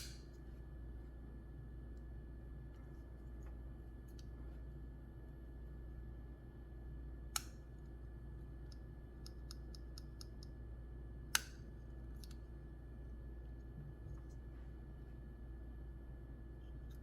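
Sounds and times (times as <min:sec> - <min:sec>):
folding knife clicks: 0:07.4 - 0:07.6, 0:11.3 - 0:11.6.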